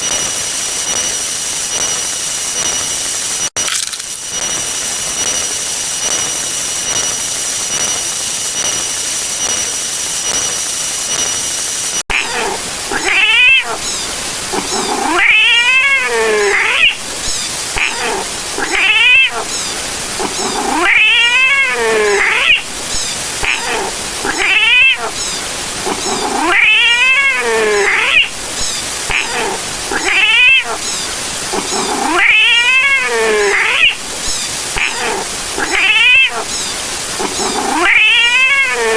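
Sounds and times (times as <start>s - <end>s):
cat yowling: 12.1s - 13.9s, 14.5s - 17.0s, 17.8s - 19.6s, 20.2s - 22.7s, 23.4s - 28.4s, 29.1s - 34.0s, 34.8s - 36.6s, 37.2s - 38.9s
steady hissing noise: 12.2s - 38.9s.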